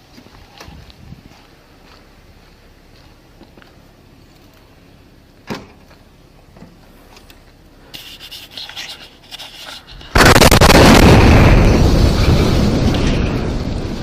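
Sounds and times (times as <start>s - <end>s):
loud explosion roar: 10.1s - 14.0s.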